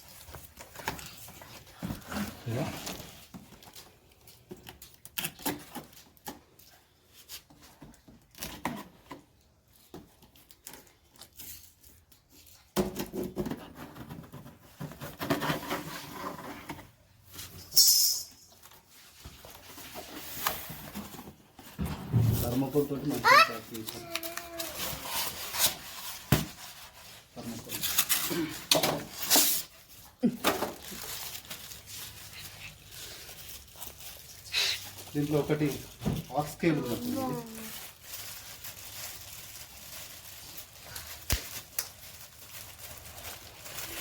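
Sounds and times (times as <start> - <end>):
cardboard rustling and scraping: 13.1 - 17.6, 18.6 - 30.0
sharp tearing noise: 40.9 - 42.0.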